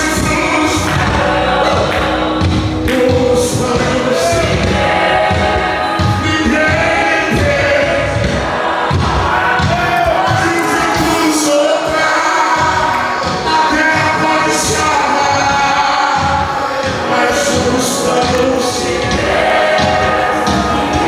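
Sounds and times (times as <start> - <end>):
steady beat: 0.0 - 13.1
voices singing together: 0.0 - 21.0.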